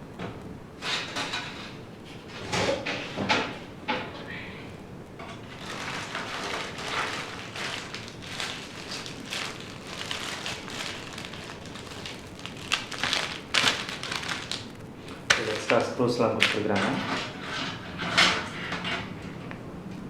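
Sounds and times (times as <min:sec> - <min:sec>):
plastic packaging crinkling: 0:05.3 - 0:17.4.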